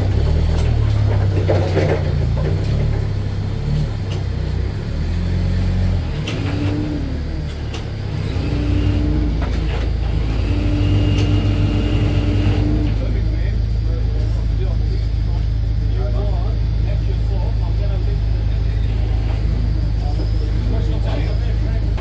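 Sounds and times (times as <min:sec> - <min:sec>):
truck engine running: 0:00.0 - 0:22.0
short rising and falling whines: 0:05.1 - 0:13.2.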